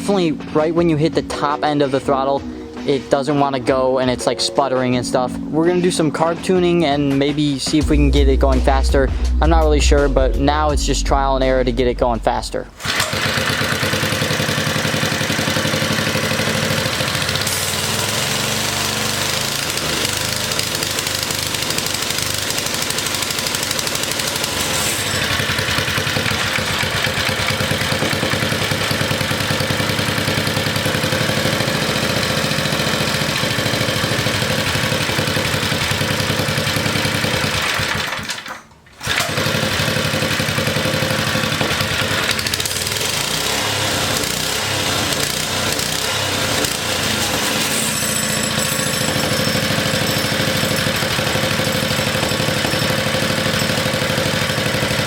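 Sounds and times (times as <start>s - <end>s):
small engine running: 12.8s - 55.0s.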